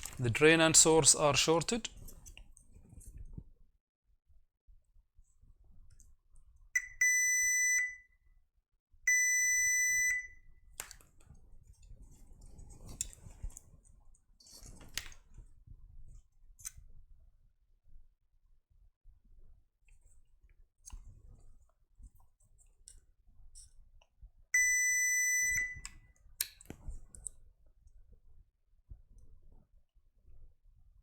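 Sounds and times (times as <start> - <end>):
faint clicks and handling noise: 0.0 - 3.4, 10.8 - 15.6, 25.6 - 27.5
multimeter beeping: 6.8 - 8.1, 9.1 - 10.4, 24.6 - 25.9.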